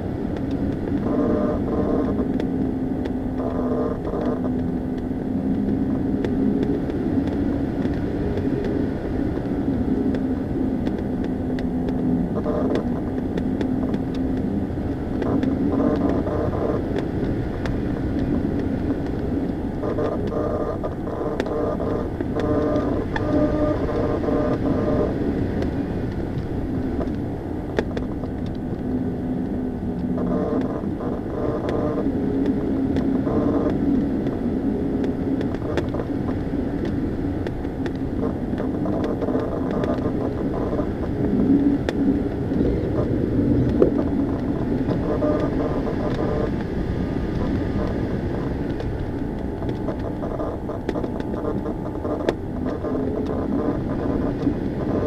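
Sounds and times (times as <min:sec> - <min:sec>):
droning aircraft engine: 0:00.0 - 0:55.0
sharp clicks: 0:47.3 - 0:55.0.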